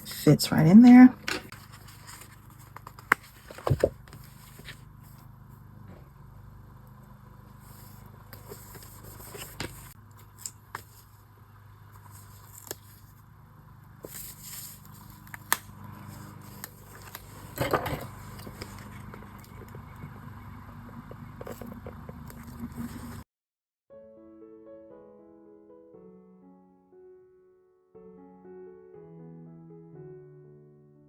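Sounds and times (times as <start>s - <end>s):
paper rustling: 1.0s - 5.3s, 7.6s - 11.3s, 11.9s - 13.3s, 14.0s - 19.8s, 21.4s - 23.2s
paper clicks and scrapes: 1.2s - 5.3s, 7.6s - 11.3s, 11.9s - 13.2s, 14.0s - 19.8s, 21.4s - 23.2s.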